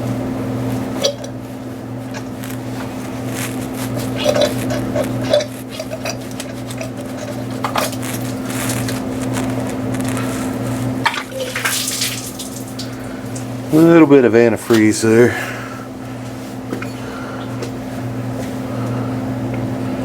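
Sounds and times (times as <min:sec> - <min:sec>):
steady low hum: 0:00.0 - 0:20.0
liquid running out: 0:11.0 - 0:13.7.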